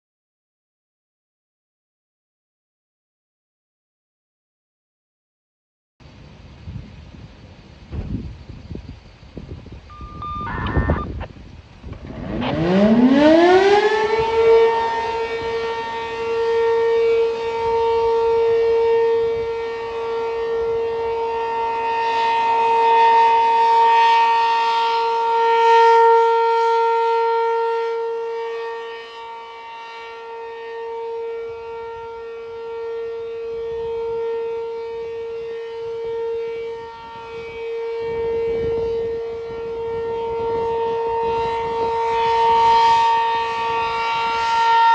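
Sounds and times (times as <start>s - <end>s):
warning siren wailing: 9.8s - 44.9s.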